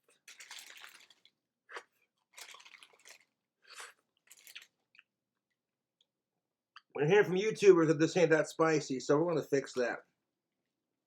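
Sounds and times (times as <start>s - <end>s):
taco shell crunching: 0.0s - 5.1s
paper wrapper crinkling: 0.2s - 1.3s.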